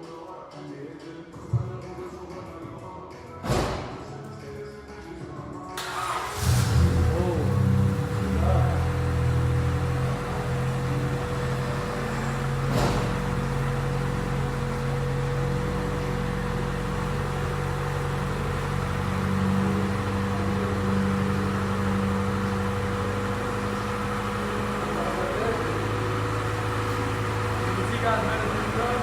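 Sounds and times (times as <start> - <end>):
car engine idling: 5.8 - 29.0.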